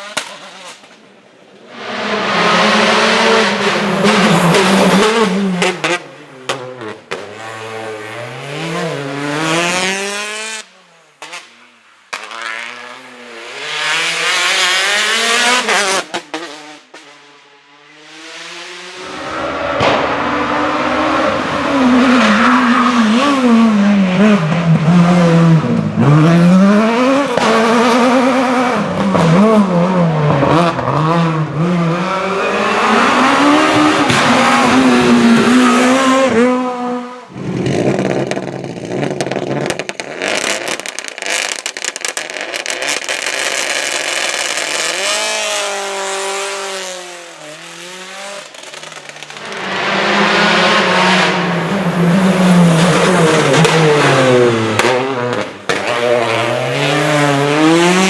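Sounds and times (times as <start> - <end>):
rally car engine revving: 0.0 - 41.6, 42.6 - 58.0
rapid crackle: 37.6 - 45.0.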